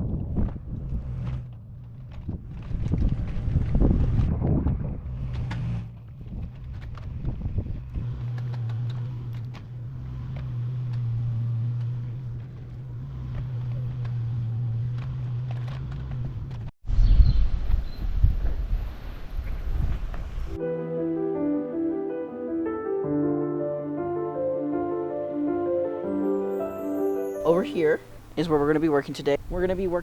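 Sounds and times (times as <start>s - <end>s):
engine running at low hum: 0.0s - 16.7s.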